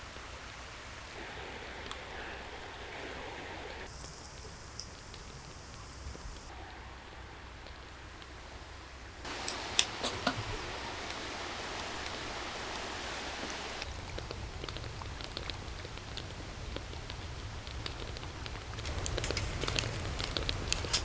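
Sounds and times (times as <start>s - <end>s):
fire hissing: 0.0s - 6.6s, 9.0s - 21.0s
wood fire crackling: 0.0s - 21.0s
loud fire pops: 9.2s - 21.0s.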